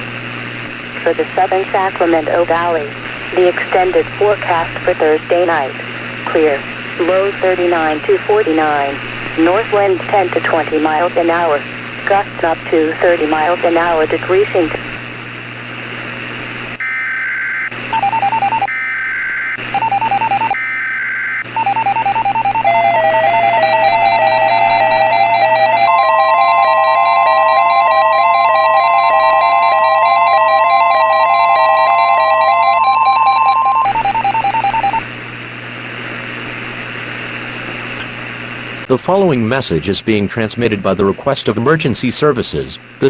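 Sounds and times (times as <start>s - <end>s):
weather radio hiss: 1.0s - 14.8s
electronic melody: 16.8s - 35.0s
two-tone digital alert screech: 22.2s - 35.0s.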